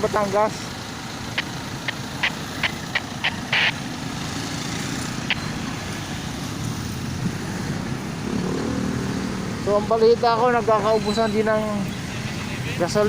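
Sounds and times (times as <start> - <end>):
road traffic rumble: 0.0 - 13.0
sharp clicks: 1.3 - 3.8, 5.2 - 5.5.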